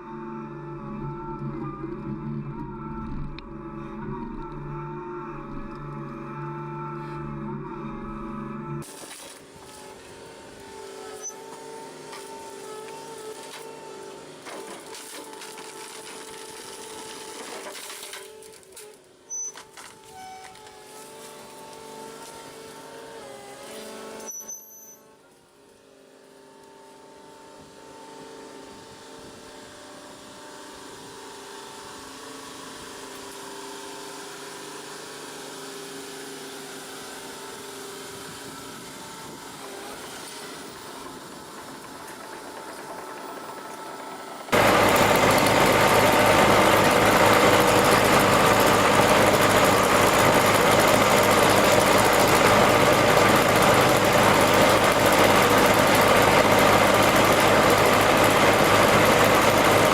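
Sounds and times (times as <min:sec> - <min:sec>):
loud engine running: 0:00.0 - 0:18.6, 0:29.9 - 0:59.9
quiet engine running: 0:34.0 - 0:59.9.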